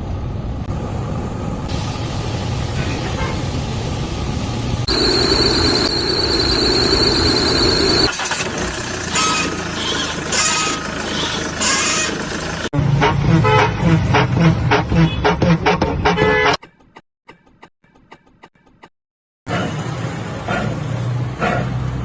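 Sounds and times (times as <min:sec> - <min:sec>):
high-pitched squeal: 0:04.9 - 0:08.2
rough engine running with surges: 0:04.9 - 0:13.0.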